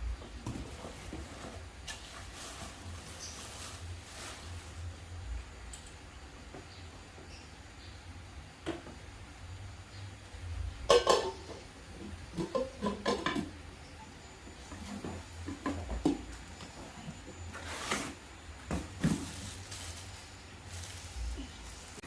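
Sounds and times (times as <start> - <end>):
kitchenware knocks and clacks: 10.9 - 11.7, 12.3 - 13.6
packaging rustling: 18.9 - 22.0.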